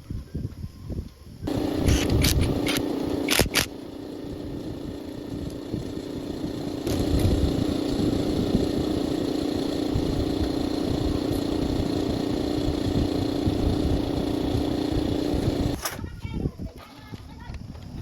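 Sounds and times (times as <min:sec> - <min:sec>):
motorcycle engine idling: 0:01.5 - 0:15.8.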